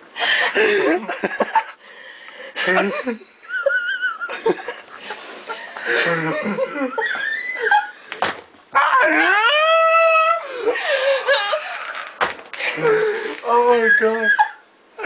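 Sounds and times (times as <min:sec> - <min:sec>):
wheezing laughter: 0:02.6 - 0:08.1, 0:10.3 - 0:14.6.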